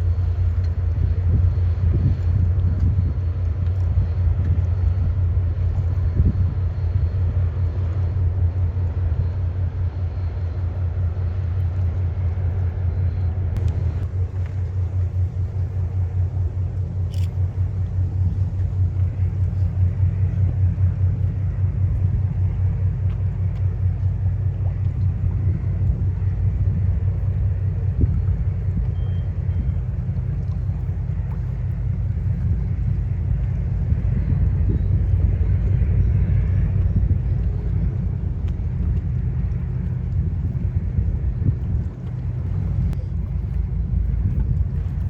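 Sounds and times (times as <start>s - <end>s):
ship engines rumbling: 0.0s - 45.0s.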